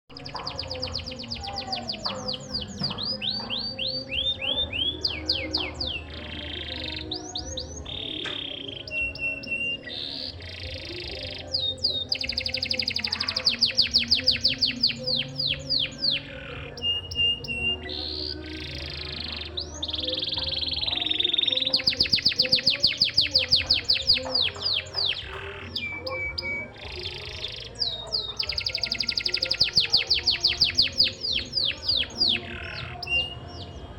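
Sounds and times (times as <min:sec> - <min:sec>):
canary singing trills: 0:00.0 - 0:33.9.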